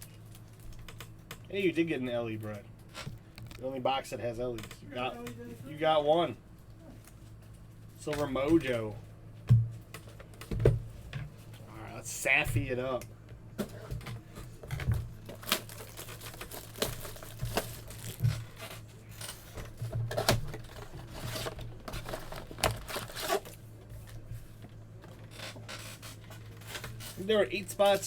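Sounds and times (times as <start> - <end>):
low steady hum: 0.0 - 28.0
cards rustling and clicking: 13.7 - 24.2
wrappers tearing and crinkling: 15.1 - 19.5, 20.1 - 23.6.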